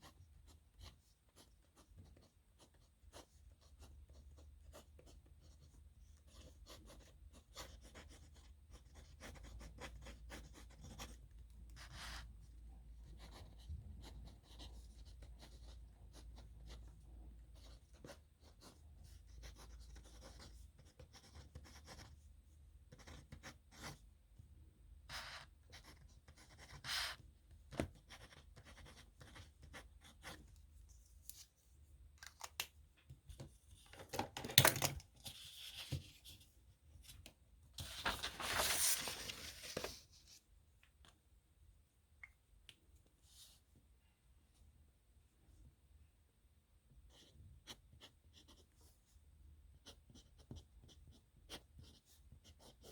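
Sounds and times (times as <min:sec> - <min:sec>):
pen scratching on paper: 0:00.0 - 0:11.2, 0:13.1 - 0:17.0, 0:17.6 - 0:22.2, 0:22.9 - 0:24.0, 0:25.1 - 0:30.5, 0:49.8 - 0:52.9.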